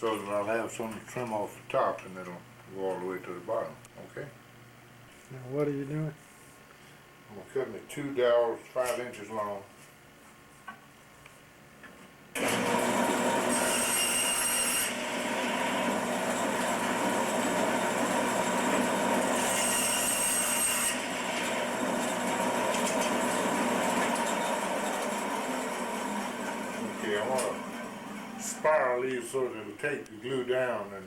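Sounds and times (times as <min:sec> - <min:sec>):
electric saw cutting wood: 0:12.4 - 0:28.7.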